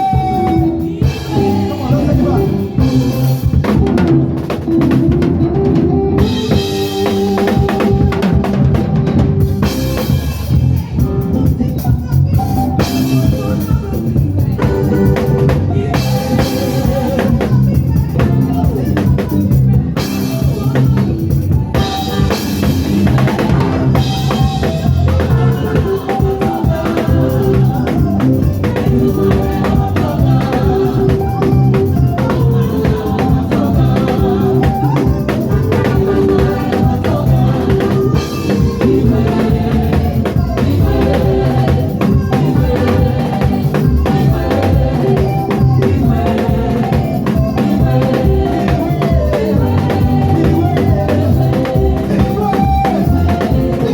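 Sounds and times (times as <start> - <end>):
heavy bass line: 0.0 - 53.9
instrumental worship band: 0.0 - 53.9.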